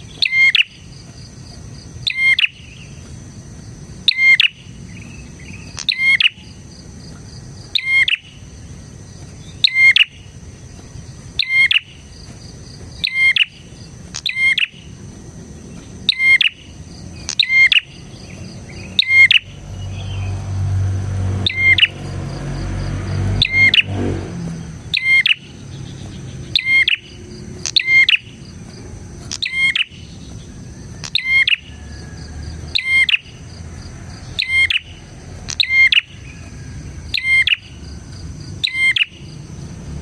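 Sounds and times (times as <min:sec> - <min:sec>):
bird calling sharply: 0:21.4 - 0:22.0.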